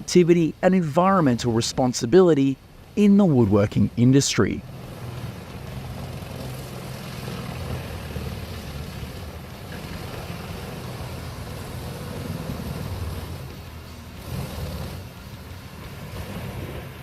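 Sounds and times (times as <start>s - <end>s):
noisy hiss: 0.0s - 17.0s
grinder engine drone: 4.6s - 17.0s.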